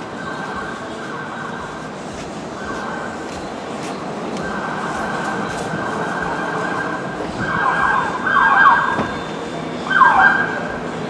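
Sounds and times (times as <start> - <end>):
siren with falling sweeps: 5.7 - 9.0, 9.8 - 10.7.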